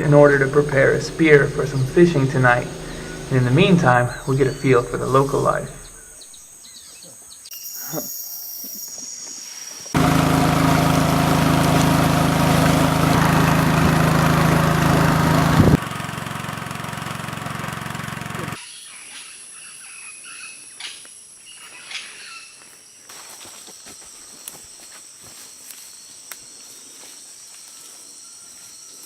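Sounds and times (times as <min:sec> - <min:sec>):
boat motor running: 0:00.0 - 0:06.2, 0:10.0 - 0:18.6
insects trilling: 0:00.0 - 0:10.0, 0:18.6 - 0:29.0.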